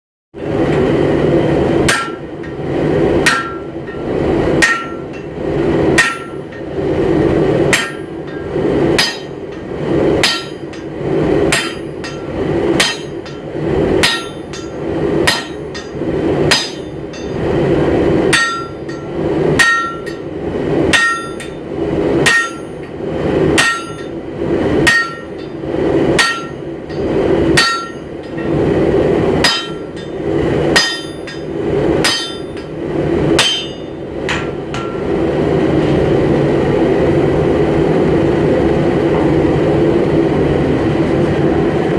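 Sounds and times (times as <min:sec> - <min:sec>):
hammer striking steel on anvil: 0:01.8 - 0:02.6, 0:03.2 - 0:06.8, 0:07.7 - 0:17.4, 0:18.3 - 0:20.3, 0:20.9 - 0:21.6, 0:22.2 - 0:24.2, 0:24.8 - 0:28.7, 0:29.4 - 0:35.2.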